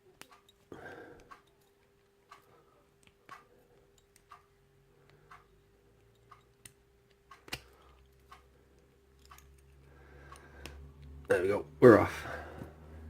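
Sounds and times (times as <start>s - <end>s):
faint steady ticking: 0.0s - 13.0s.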